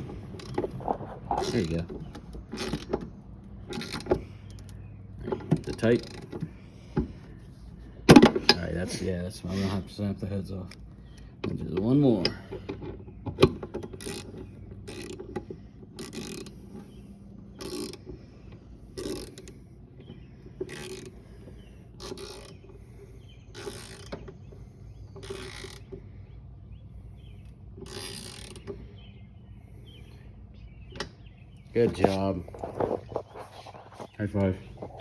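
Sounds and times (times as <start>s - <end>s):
hand ratchet clicking: 0.0s - 6.5s, 13.4s - 16.9s, 17.6s - 18.2s, 18.9s - 22.8s, 23.5s - 24.4s, 25.1s - 26.0s, 27.8s - 28.9s.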